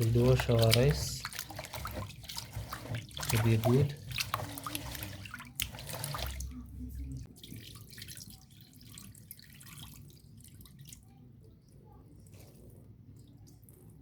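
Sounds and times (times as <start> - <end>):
water dripping: 0.0 - 11.1
water sloshing and splashing: 0.0 - 11.3.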